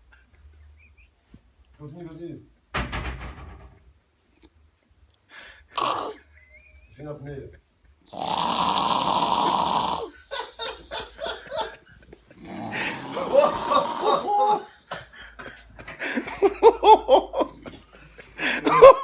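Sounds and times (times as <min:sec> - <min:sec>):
loud snore: 0:05.7 - 0:06.2, 0:08.1 - 0:10.2, 0:12.4 - 0:14.5
people laughing: 0:10.1 - 0:19.0.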